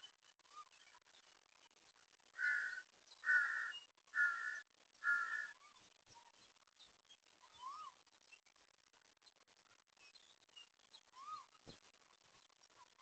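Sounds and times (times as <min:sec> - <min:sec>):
crow cawing: 0:02.4 - 0:05.5
faint bird chirp: 0:02.4 - 0:08.6, 0:10.0 - 0:13.0.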